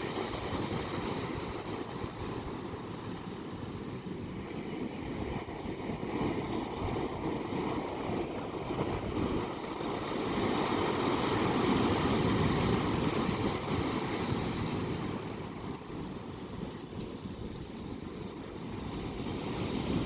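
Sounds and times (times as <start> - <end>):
ocean waves breaking: 0.0 - 20.0.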